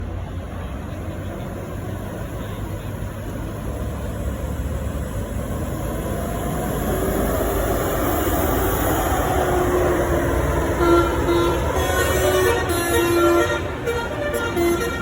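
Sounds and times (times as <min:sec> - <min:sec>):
bus engine and road rumble: 0:00.0 - 0:15.0
multi-tone bus horn: 0:10.5 - 0:15.0.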